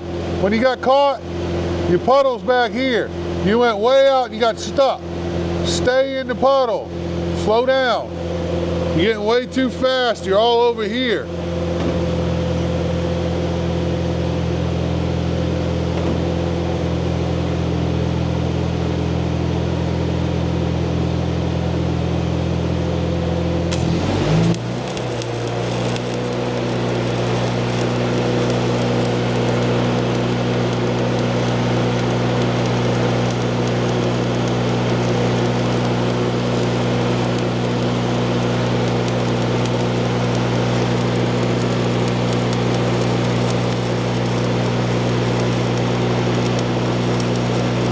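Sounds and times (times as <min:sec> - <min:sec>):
welding arc crackling: 0:23.7 - 0:47.9
welding machine hum: 0:23.7 - 0:47.9.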